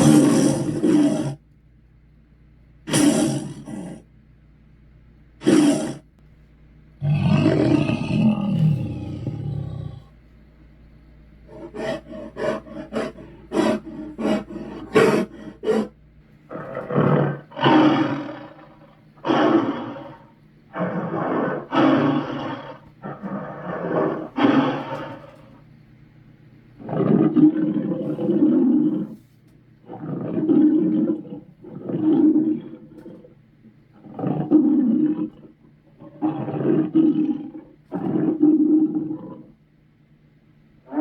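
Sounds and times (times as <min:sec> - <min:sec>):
loud monster roars: 0:00.0 - 0:01.4, 0:02.9 - 0:04.0, 0:05.4 - 0:06.1, 0:07.0 - 0:10.1, 0:11.6 - 0:15.9, 0:16.5 - 0:25.4.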